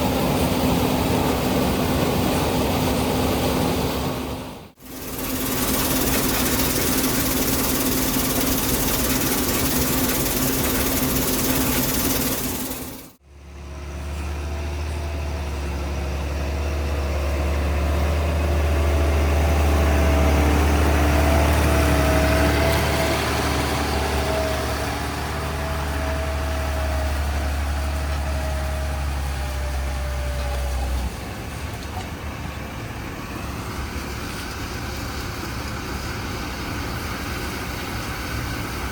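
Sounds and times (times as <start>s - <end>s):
diesel farm machinery drone: 0.0s - 38.9s
wavering high whine: 4.8s - 13.1s.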